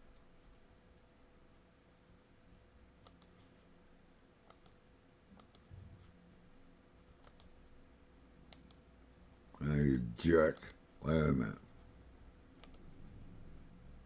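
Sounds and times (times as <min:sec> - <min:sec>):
faint sharp clicks: 0:04.5 - 0:04.8, 0:07.2 - 0:07.5, 0:12.6 - 0:12.9.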